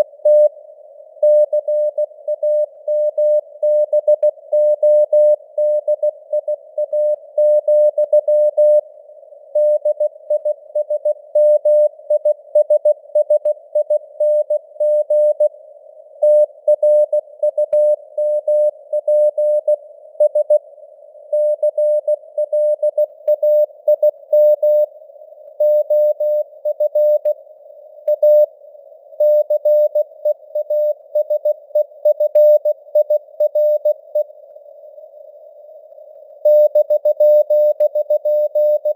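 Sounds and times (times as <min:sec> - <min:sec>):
morse code tone: 0:36.5 - 0:38.9.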